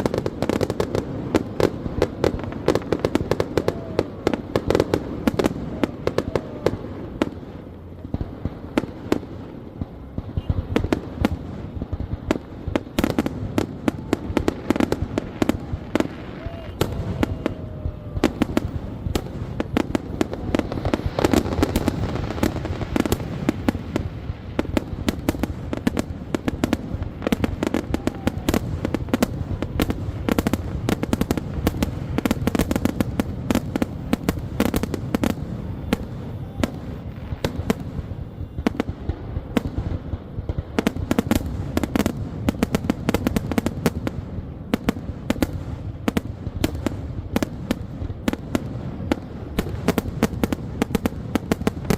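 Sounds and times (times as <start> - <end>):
fireworks crackling pops: 0.0 - 51.9
fireworks sharp bangs: 0.0 - 51.9.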